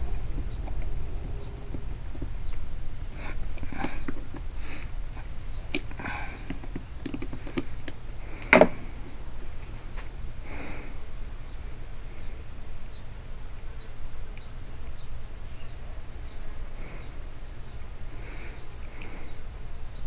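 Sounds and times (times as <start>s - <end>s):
person sniffing or breathing: 3.1s - 5.0s, 10.4s - 11.1s, 18.1s - 19.4s.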